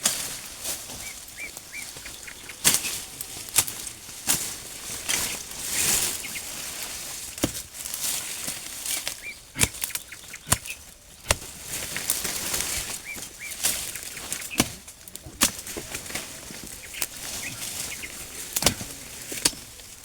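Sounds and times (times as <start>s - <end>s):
rustling of leaves and stalks: 0.0s - 20.0s
faint bird chirps: 1.0s - 3.5s.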